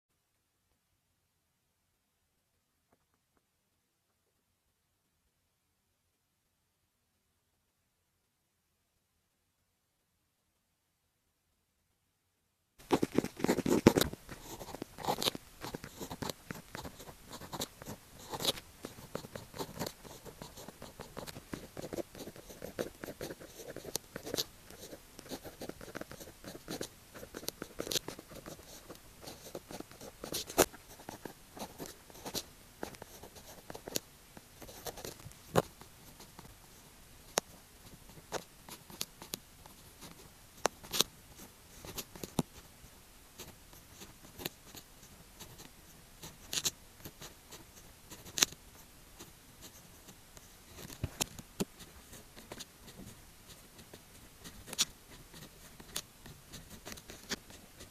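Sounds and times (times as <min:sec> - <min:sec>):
pen scratching on paper: 0:12.8 - 0:34.0, 0:34.6 - 0:36.5, 0:40.8 - 0:42.7, 0:43.4 - 0:57.9.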